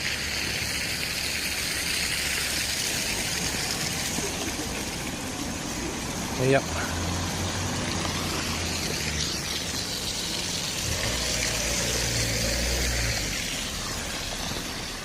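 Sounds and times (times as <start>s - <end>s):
vehicle engine running low: 0.4s - 15.0s
tyre hiss on snow: 6.4s - 15.0s.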